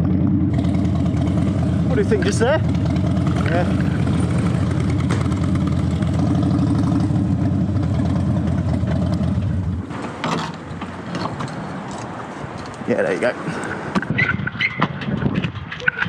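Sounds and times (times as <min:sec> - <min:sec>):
motorcycle engine idling: 0:00.0 - 0:09.9.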